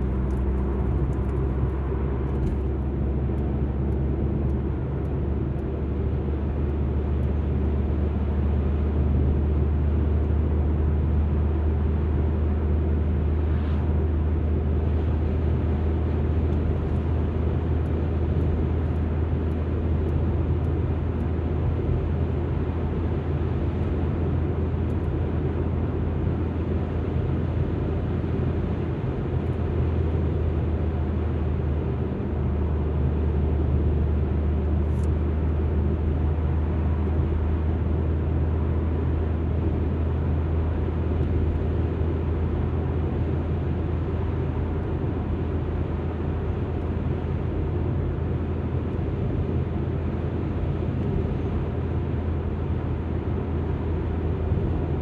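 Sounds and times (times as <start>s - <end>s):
car engine and tyre rumble: 0.0s - 55.0s.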